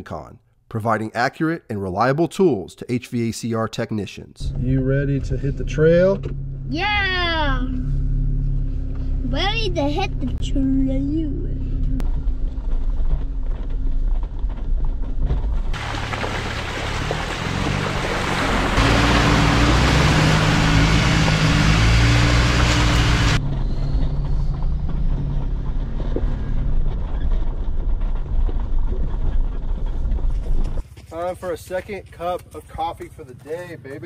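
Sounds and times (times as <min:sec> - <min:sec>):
car engine running: 0:04.4 - 0:30.8.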